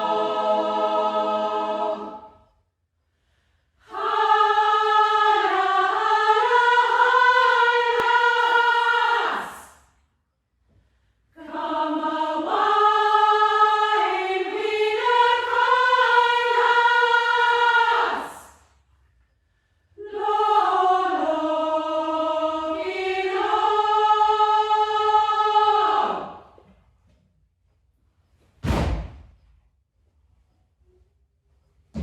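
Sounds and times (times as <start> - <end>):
upper-voice choir singing: 0.0 - 2.7, 3.8 - 10.0, 11.4 - 18.7, 20.0 - 26.8.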